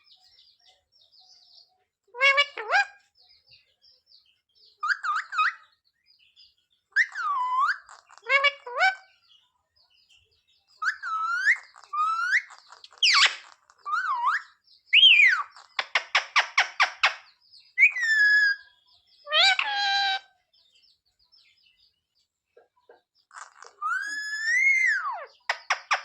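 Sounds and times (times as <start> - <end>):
parakeet whistled calls: 7.0 - 9.0, 10.8 - 18.7, 23.4 - 26.0
parakeet rattling chatter: 10.9 - 14.2, 15.0 - 17.3, 23.3 - 26.0.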